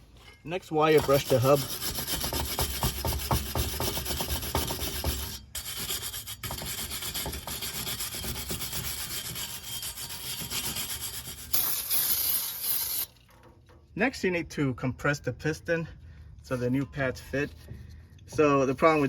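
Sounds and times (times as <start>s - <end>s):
wire brush scrubbing metal: 0.6s - 13.2s.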